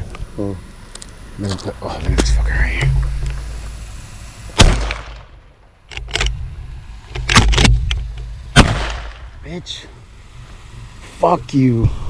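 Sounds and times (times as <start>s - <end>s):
shotgun blasts: 4.6s - 5.4s, 8.5s - 9.3s.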